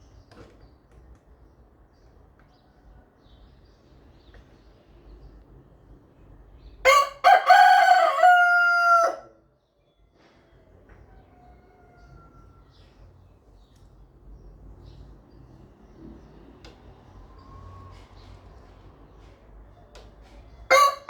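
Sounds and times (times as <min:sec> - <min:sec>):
faint background noise: 0:00.0 - 0:21.0
rooster crowing: 0:06.8 - 0:09.4, 0:11.1 - 0:12.8, 0:20.7 - 0:21.0.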